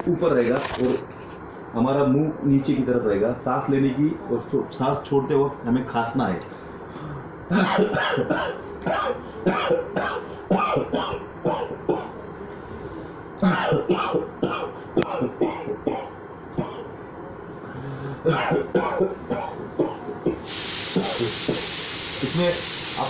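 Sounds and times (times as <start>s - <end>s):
man coughing forcefully: 7.5s - 12.2s, 13.4s - 16.9s, 18.0s - 20.4s, 21.0s - 21.7s.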